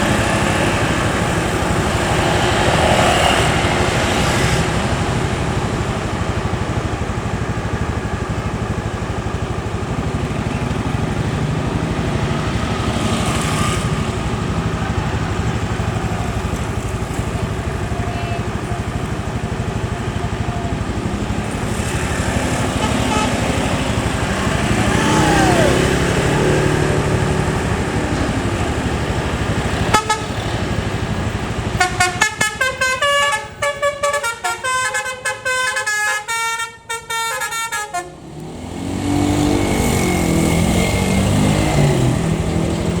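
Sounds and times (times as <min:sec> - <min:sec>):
bus engine and road noise: 0:00.0 - 0:43.0
musical bus horn melody: 0:22.5 - 0:26.1, 0:29.8 - 0:30.6, 0:31.7 - 0:38.3.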